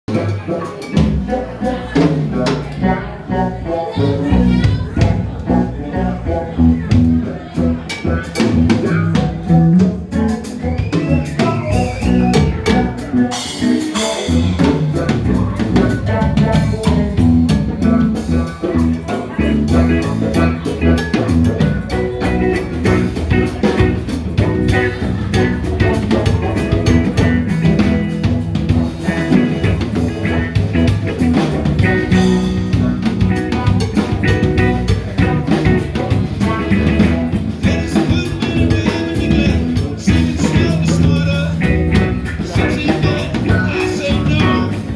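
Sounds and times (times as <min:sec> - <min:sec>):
band playing upbeat song: 0:00.1 - 0:44.9
drum kit beat: 0:00.1 - 0:44.9.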